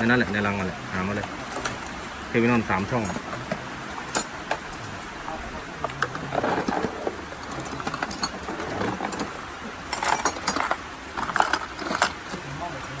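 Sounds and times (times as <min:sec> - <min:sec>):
small parts clicking and knocking: 0:05.8 - 0:09.3, 0:09.9 - 0:12.3.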